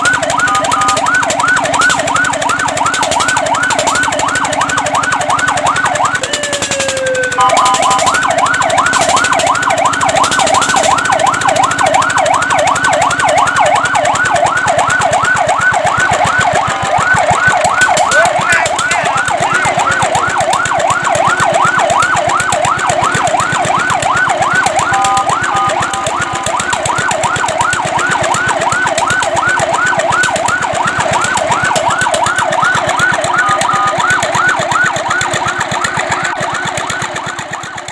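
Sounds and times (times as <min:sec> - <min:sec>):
fire truck siren yelping: 0:00.0 - 0:37.9.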